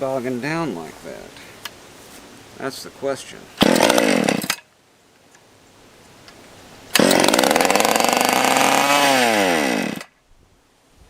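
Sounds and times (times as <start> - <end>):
chainsaw engine running: 3.6 - 4.6, 6.9 - 10.1.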